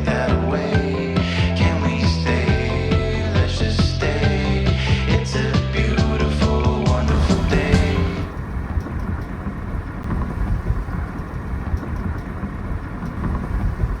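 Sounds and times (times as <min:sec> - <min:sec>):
background music: 0:00.0 - 0:08.4
steady low rumbling: 0:00.0 - 0:14.0.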